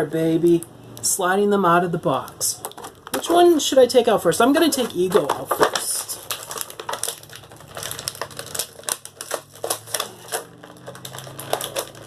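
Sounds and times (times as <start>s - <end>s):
plastic packaging clicking and crackling: 2.2s - 3.7s, 4.4s - 12.0s.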